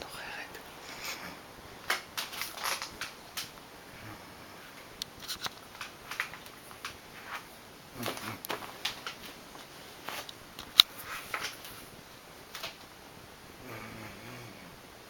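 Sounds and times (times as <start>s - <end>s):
soft rustles: 4.5s - 12.0s.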